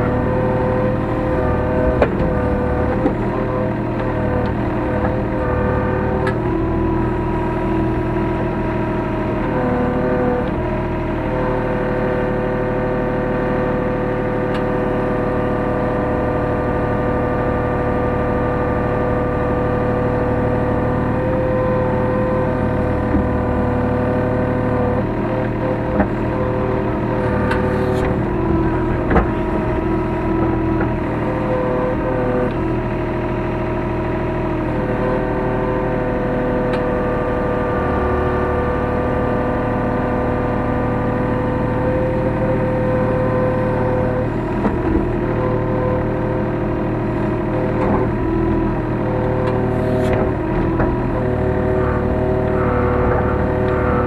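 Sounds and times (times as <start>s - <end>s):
excavator engine running: 0.0s - 54.0s.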